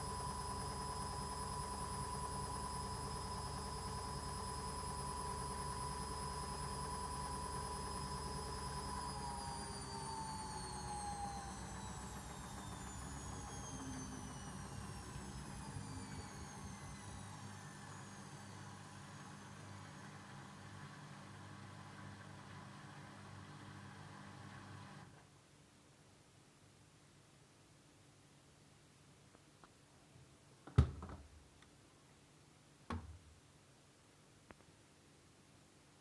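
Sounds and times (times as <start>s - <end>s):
washing machine spinning: 0.1s - 21.2s.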